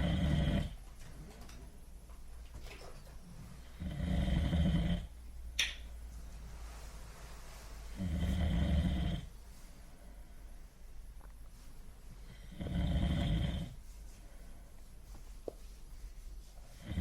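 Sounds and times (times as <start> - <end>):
person snoring: 0.0 - 0.8, 3.7 - 5.1, 7.9 - 9.3, 12.3 - 13.8, 16.8 - 17.0.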